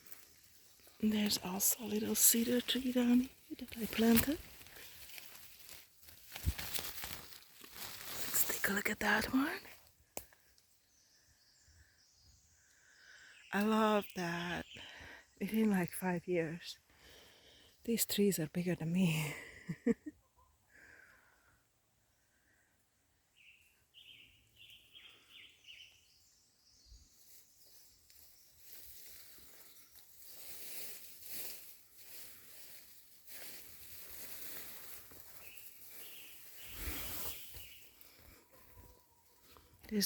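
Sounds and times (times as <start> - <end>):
leaves and brush rustling: 0.0 - 10.7, 27.0 - 40.0.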